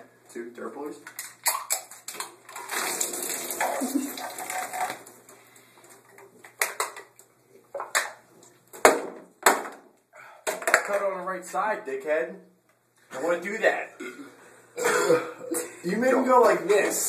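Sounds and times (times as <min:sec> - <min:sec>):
beer gushing and fizzing from can: 0:02.5 - 0:05.2.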